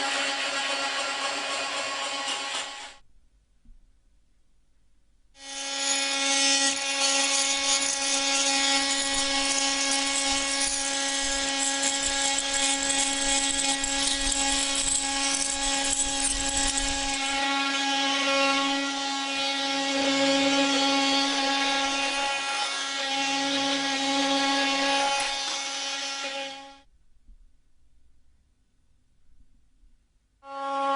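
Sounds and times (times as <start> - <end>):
oscillating multi-tool buzzing: 5.4 - 26.8.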